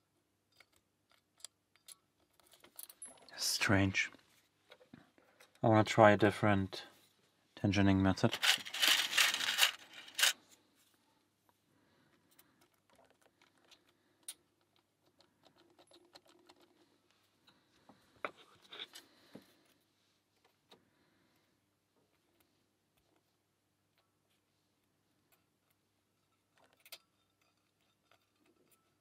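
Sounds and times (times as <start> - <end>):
lock pick clicking and scraping: 0.5 - 3.3, 12.3 - 16.8, 25.3 - 29.0.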